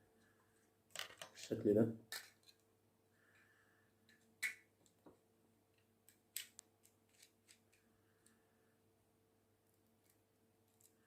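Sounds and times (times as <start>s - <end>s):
faint steady hum: 0.0s - 11.0s
clicks and knocks handling wire: 0.9s - 1.5s, 2.1s - 2.7s, 3.3s - 8.4s.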